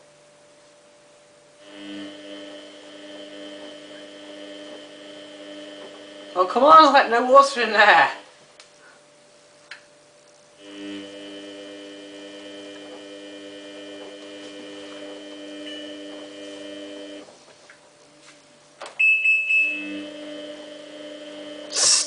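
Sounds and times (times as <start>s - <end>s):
washing machine electric buzz: 0.0s - 22.0s
loud high beep: 19.0s - 19.9s.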